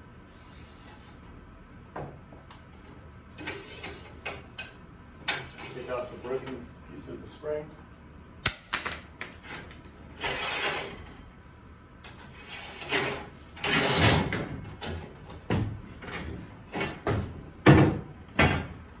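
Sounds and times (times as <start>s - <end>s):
steel parts scraping: 5.3s - 6.6s, 10.2s - 11.1s, 12.2s - 14.1s.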